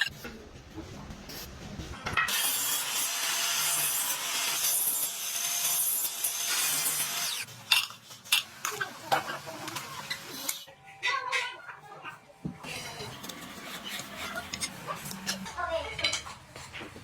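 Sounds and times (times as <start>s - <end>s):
tool rasping bamboo: 12.8s - 15.3s.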